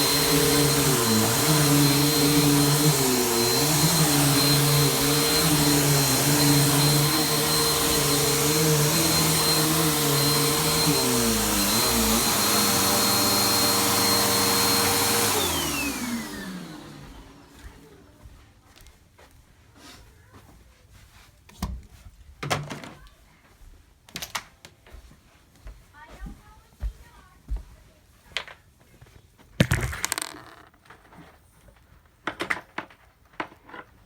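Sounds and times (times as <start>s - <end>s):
vacuum cleaner running: 0.0s - 18.3s, 29.6s - 30.6s.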